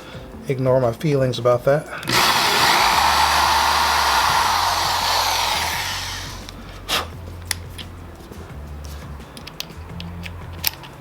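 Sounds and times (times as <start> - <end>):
power drill running: 2.1 - 6.6.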